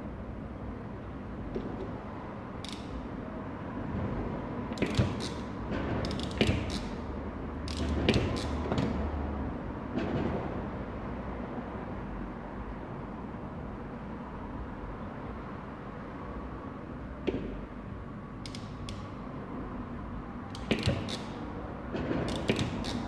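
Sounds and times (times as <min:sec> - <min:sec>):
steady background hum: 0:00.0 - 0:23.0
parts clicking and clattering: 0:04.7 - 0:06.9.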